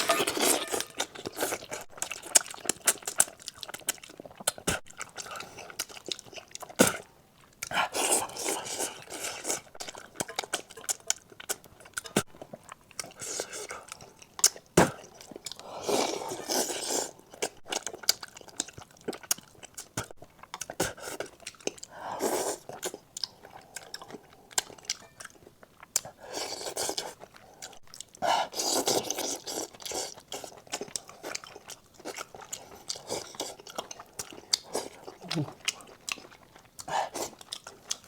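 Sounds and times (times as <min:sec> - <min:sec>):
chewing and crunching food: 0:00.0 - 0:38.0.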